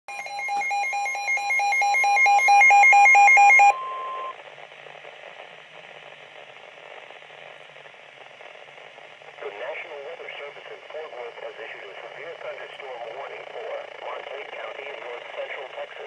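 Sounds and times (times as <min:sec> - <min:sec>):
faint radio hiss: 0:04.0 - 0:16.0.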